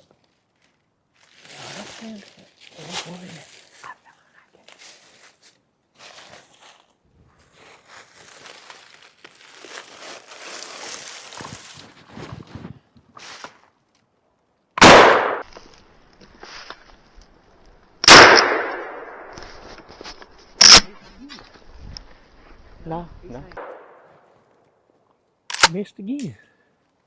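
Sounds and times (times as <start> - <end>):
rustling: 0.0 - 14.0, 15.4 - 17.8, 18.5 - 24.7
gunshots: 14.8 - 15.5, 18.0 - 19.4, 20.6 - 21.0.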